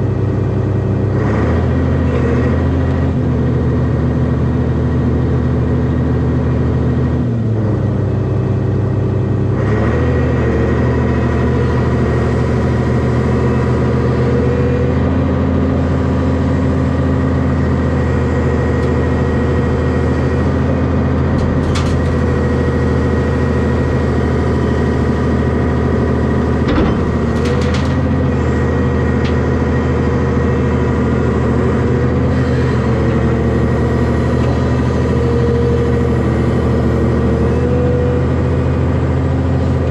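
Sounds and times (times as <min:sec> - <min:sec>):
diesel engine running: 0:00.0 - 0:39.9
hydraulic whine: 0:10.7 - 0:38.8.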